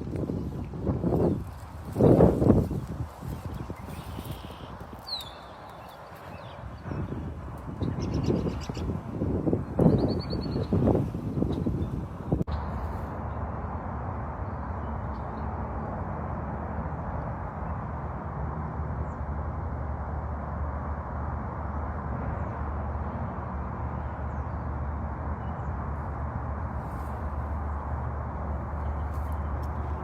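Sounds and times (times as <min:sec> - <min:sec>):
outdoor background rumble: 0:00.0 - 0:30.0
faint high bird chirps: 0:03.8 - 0:06.6.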